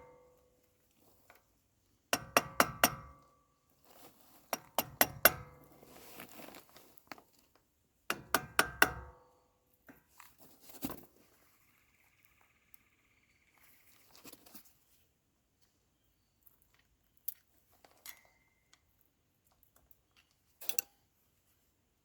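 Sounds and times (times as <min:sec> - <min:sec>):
hammer blows ringing on steel: 0:02.2 - 0:03.2, 0:04.8 - 0:05.7, 0:08.1 - 0:09.2.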